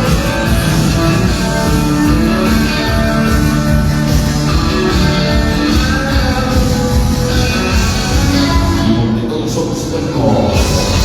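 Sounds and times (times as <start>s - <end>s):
loud rock and roll music: 0.0s - 11.0s.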